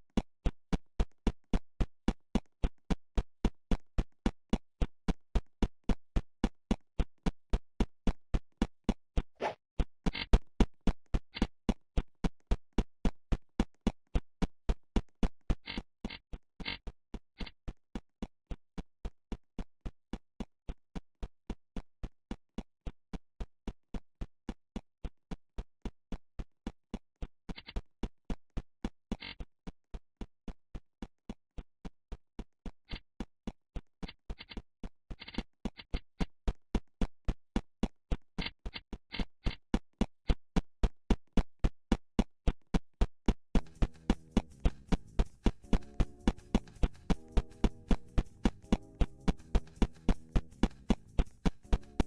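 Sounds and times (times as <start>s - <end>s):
kick drum beat: 43.6s - 52.0s.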